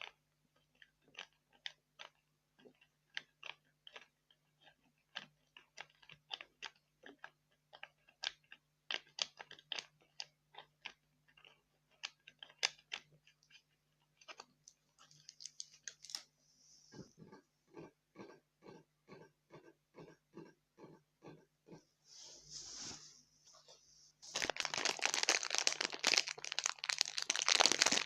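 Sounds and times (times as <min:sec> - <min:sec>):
crisp clicks and crunches: 0:00.0 - 0:16.3, 0:24.2 - 0:28.0.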